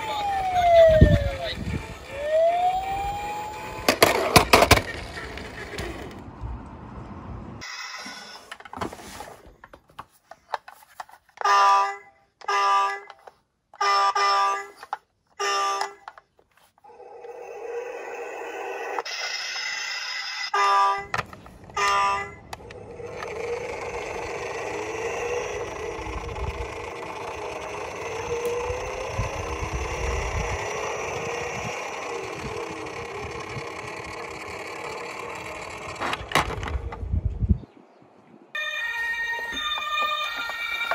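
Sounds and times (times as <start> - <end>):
faint siren tone: 0.0 - 3.9
toy cars rolling down plastic slope: 0.0 - 6.2, 15.6 - 37.0
toy electronic beeps: 18.2 - 20.7.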